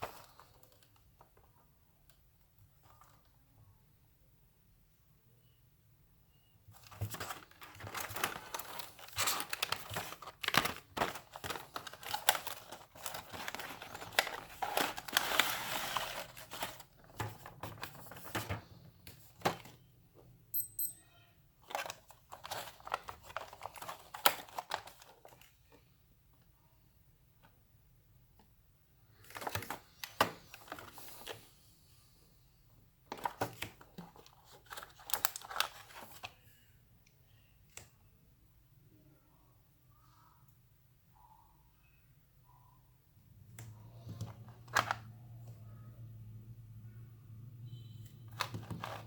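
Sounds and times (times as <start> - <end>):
plastic packaging crinkling: 6.8 - 18.4, 48.4 - 49.0.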